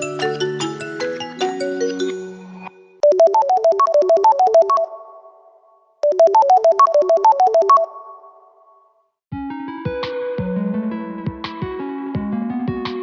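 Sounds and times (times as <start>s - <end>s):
phone ringtone bright notes: 3.0s - 5.3s, 6.0s - 8.5s
different ringtone: 3.0s - 8.6s.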